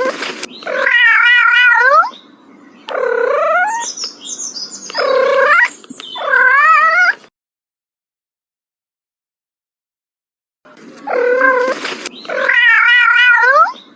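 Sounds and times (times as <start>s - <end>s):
cat yowling: 0.0s - 2.2s, 2.9s - 3.9s, 4.9s - 7.3s, 11.0s - 13.9s.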